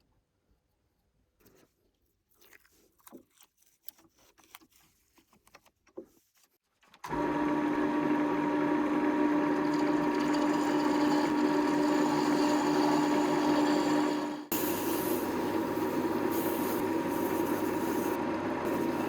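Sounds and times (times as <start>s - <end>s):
steady motor hum: 7.1s - 19.0s.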